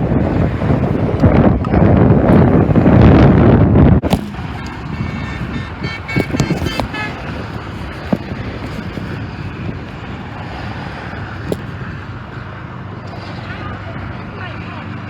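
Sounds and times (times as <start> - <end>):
road traffic noise: 0.0 - 15.0
short high-pitched toots: 4.8 - 7.3.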